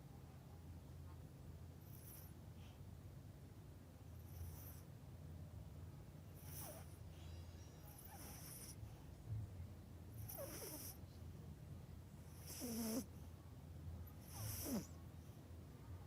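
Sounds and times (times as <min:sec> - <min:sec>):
dog snoring with whistle: 0:06.4 - 0:07.0, 0:07.8 - 0:08.8, 0:10.2 - 0:11.0, 0:12.3 - 0:13.1, 0:14.2 - 0:15.0.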